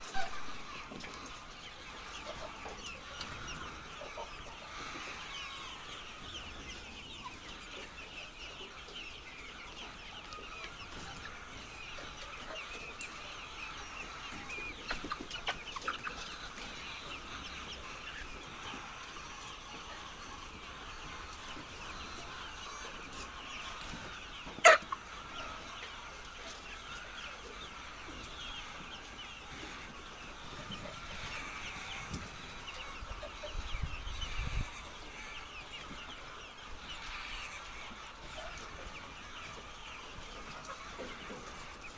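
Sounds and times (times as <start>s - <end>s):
hens clucking: 0.0s - 41.9s.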